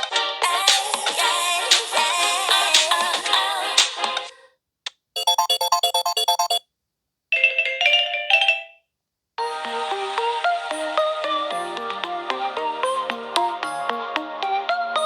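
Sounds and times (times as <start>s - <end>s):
electronic ringtone tune: 5.2s - 6.6s
rapid pulsing beeps: 5.2s - 6.6s.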